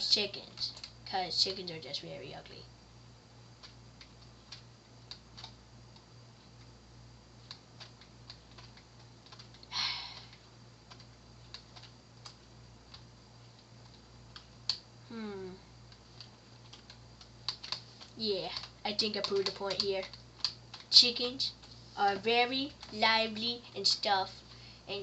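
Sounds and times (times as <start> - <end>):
steady low hum: 0.0 - 25.0
keyboard keys clicking: 7.4 - 9.7, 10.3 - 13.0, 15.9 - 21.0.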